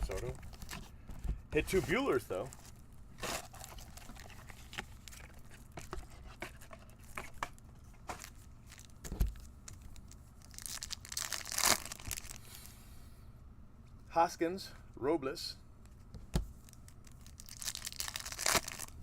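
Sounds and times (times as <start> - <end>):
card pack wrappers crinkling: 0.0 - 0.8, 1.6 - 12.4, 16.6 - 19.0.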